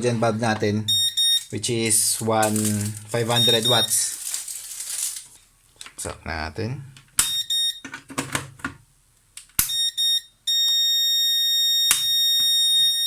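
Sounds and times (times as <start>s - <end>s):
high-pitched alarm beeps: 0.9s - 1.5s, 3.3s - 4.1s, 7.3s - 7.9s, 9.7s - 13.0s.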